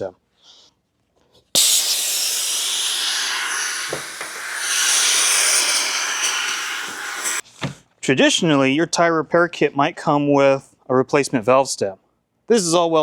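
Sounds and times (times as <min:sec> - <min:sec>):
air hissing out of tire: 0:01.6 - 0:07.4
valve click: 0:01.6 - 0:07.4.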